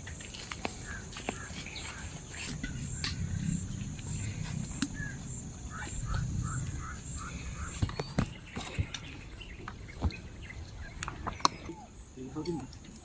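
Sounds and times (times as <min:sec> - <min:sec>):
low rumble: 0:00.7 - 0:12.2
scattered clicks and knocks: 0:05.7 - 0:10.3.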